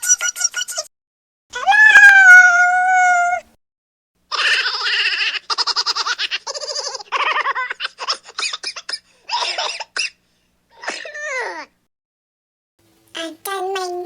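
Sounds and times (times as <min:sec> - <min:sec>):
cartoon baby voice giggling: 0:00.0 - 0:00.9.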